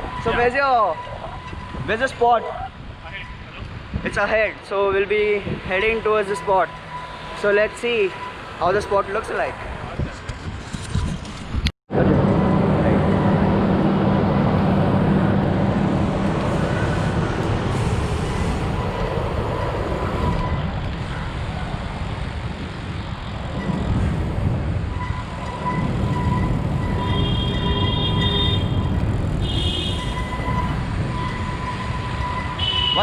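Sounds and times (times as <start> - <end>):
bike riding rushing noise: 9.6 - 33.0.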